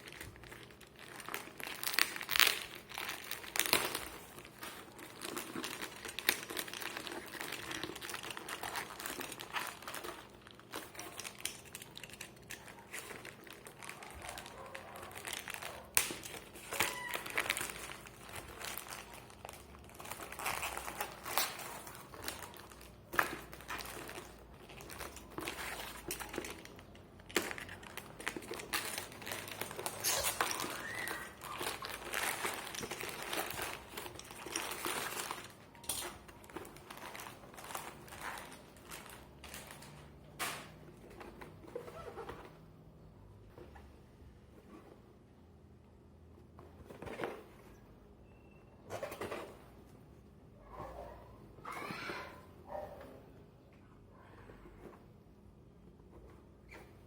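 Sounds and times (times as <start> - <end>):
plastic packaging crinkling: 0.0 - 42.3.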